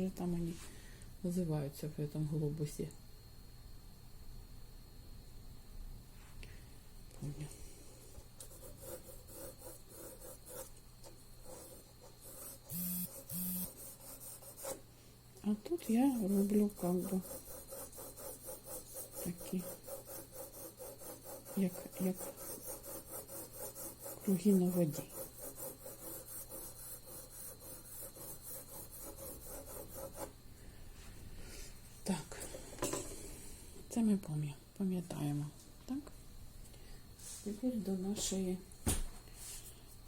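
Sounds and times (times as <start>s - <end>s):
pencil scratching on paper: 8.4s - 10.8s, 11.4s - 14.8s, 15.7s - 30.4s
loud mechanical buzzes: 12.7s - 13.7s.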